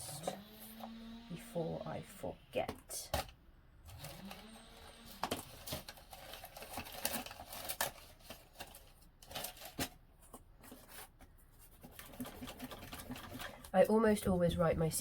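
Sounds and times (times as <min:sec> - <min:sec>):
pencil scratching on plastic: 0:10.6 - 0:13.7.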